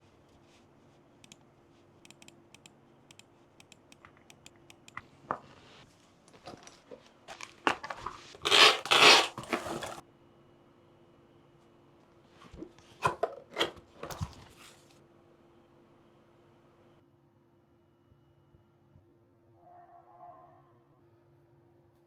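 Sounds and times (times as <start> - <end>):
packaging rustling and tearing: 6.4 - 10.0.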